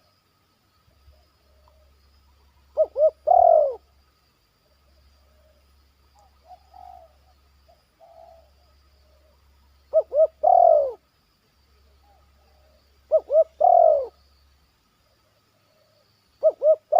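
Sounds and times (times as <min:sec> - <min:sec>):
dove cooing: 0:02.6 - 0:03.9, 0:06.2 - 0:11.0, 0:11.9 - 0:14.2, 0:15.7 - 0:16.9.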